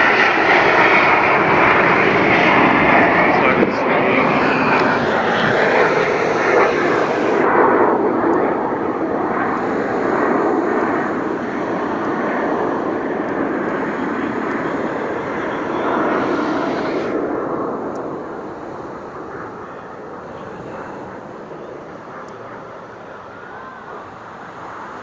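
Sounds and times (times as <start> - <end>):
jets flying over: 0.0 - 25.0.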